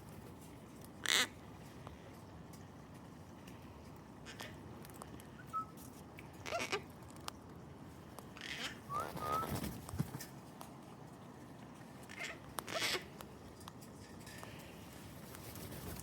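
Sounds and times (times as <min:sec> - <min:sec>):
cockatoo raspy scratchy calls: 0:01.0 - 0:01.3, 0:08.4 - 0:09.6, 0:12.1 - 0:13.1.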